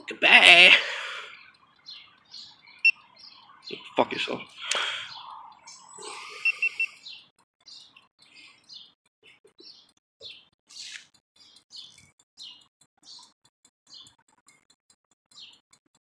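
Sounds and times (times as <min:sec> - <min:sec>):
small birds chirping: 0:00.0 - 0:16.0
high electronic beeps: 0:06.2 - 0:07.0.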